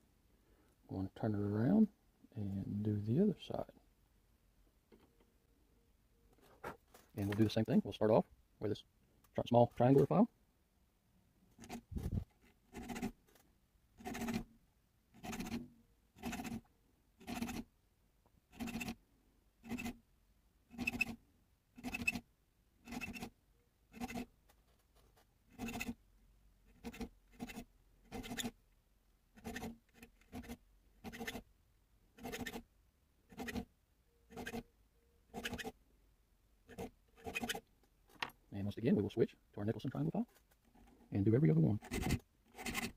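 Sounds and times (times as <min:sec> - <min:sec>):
file rasping metal: 0:12.7 - 0:13.1, 0:14.0 - 0:14.4, 0:15.2 - 0:15.6, 0:16.2 - 0:16.6, 0:17.2 - 0:17.6, 0:18.5 - 0:19.0, 0:19.6 - 0:20.0, 0:20.7 - 0:21.2, 0:21.8 - 0:22.2, 0:22.9 - 0:23.3, 0:25.5 - 0:26.0, 0:26.7 - 0:28.6, 0:29.4 - 0:31.4, 0:32.2 - 0:32.6, 0:33.3 - 0:33.6, 0:34.3 - 0:34.6, 0:35.3 - 0:35.7, 0:36.7 - 0:37.6, 0:41.8 - 0:42.9.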